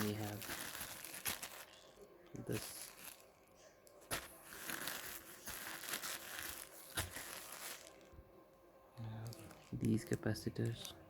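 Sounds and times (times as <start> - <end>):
packaging crinkling: 0.0 - 8.1.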